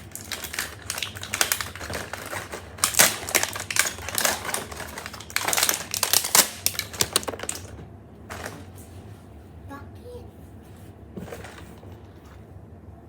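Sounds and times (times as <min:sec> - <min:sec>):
plastic packaging crinkling: 0:00.0 - 0:08.7.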